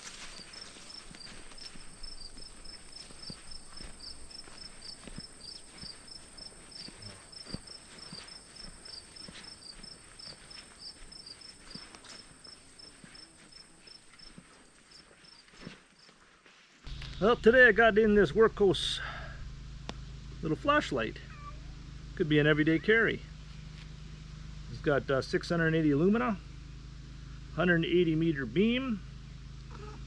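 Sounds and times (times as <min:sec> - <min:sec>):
high-pitched insect trill: 0:00.0 - 0:15.4
crickets chirping: 0:00.0 - 0:16.2
soft footsteps: 0:00.0 - 0:16.9.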